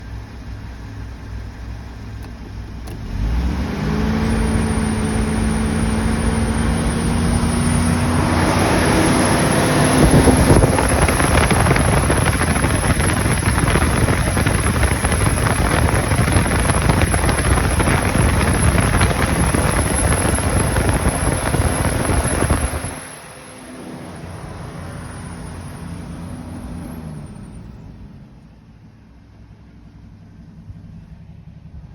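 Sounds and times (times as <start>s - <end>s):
car engine running: 0.0s - 31.8s
loud rushing hiss: 6.0s - 25.0s.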